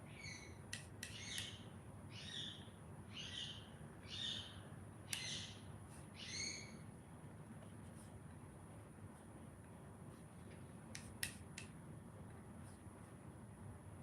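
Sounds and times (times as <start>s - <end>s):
sharp clicks: 10.9s - 11.8s.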